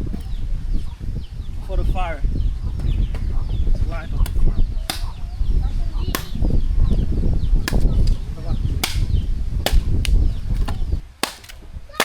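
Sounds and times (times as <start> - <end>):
low microphone rumble: 0.0 - 12.0
small birds chirping: 0.0 - 12.0
firewood snapping: 4.2 - 5.1, 7.6 - 8.2, 8.8 - 11.6.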